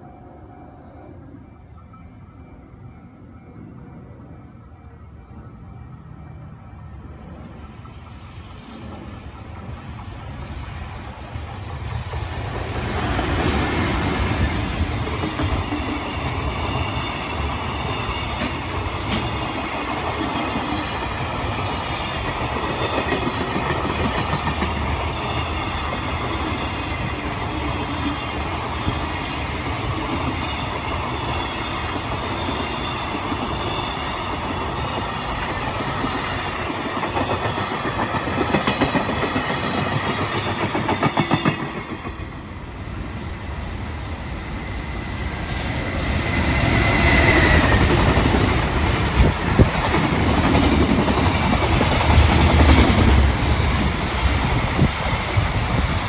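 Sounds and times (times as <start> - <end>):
freight train wagons clattering: 46.7 - 56.0.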